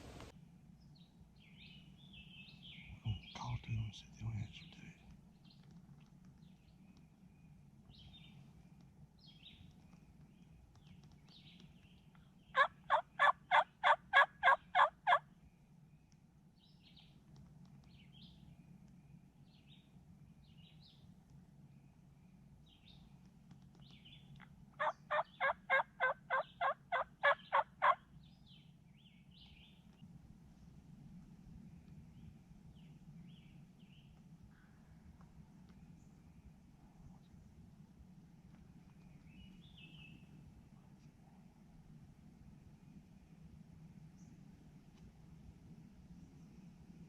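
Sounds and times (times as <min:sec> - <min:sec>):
faint songbird chirps: 0:00.0 - 0:47.0
turkey call hen yelps: 0:12.6 - 0:15.2, 0:24.8 - 0:28.0.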